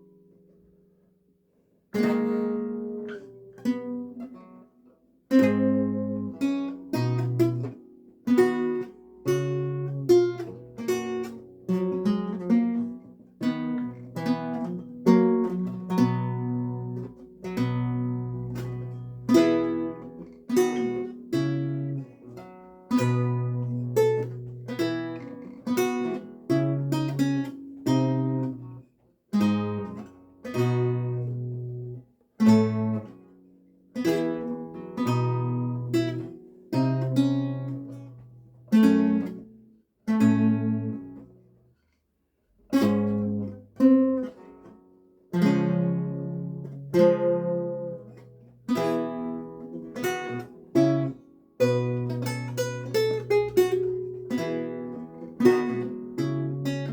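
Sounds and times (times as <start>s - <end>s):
solo lute playing: 1.9s - 41.6s, 42.6s - 56.9s.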